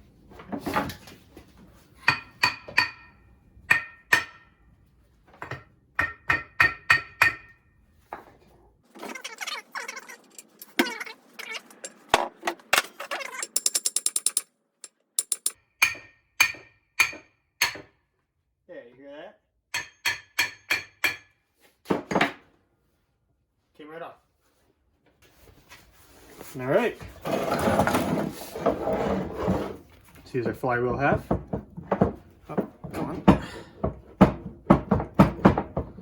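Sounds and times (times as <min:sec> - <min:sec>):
metal clatter: 0:10.2 - 0:15.6
ratchet clicks: 0:13.2 - 0:14.5, 0:15.2 - 0:15.6.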